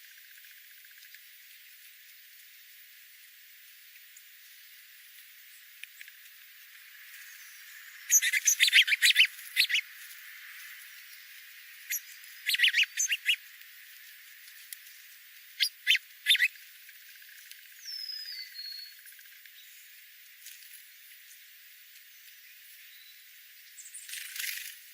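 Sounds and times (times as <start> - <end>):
wild birds chirping: 3.9 - 20.3.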